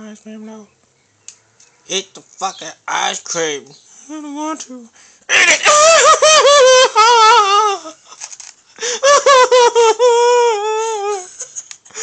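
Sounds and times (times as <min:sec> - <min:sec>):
soft clicks: 0:00.1 - 0:01.8
high-pitched squeaky laughter: 0:05.4 - 0:08.2, 0:09.0 - 0:11.7.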